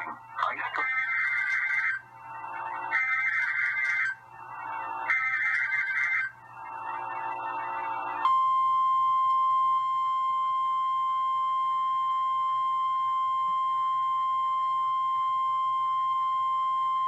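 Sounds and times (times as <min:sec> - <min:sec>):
steady high alarm tone: 0:00.3 - 0:17.0.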